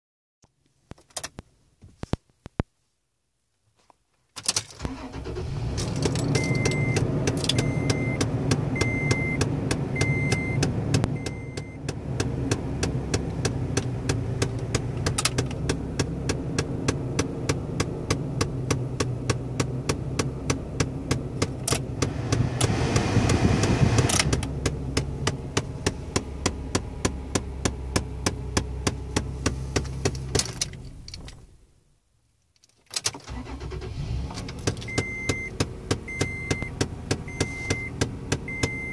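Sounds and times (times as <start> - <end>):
car engine starting and idling: 4.4 - 32.0, 32.8 - 38.9
rapid regular clicking from dash: 5.8 - 31.5, 34.3 - 38.9.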